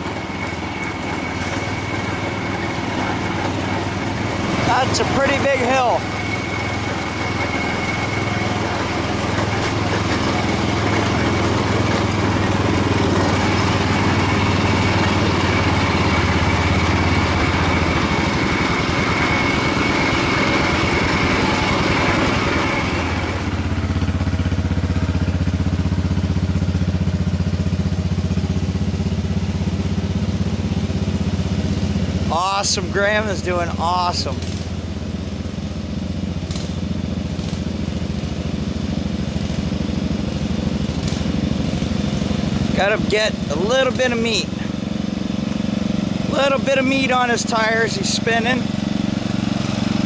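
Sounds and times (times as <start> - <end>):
lawn tractor engine running: 0.0 - 50.0
high-pitched whine: 13.4 - 23.7.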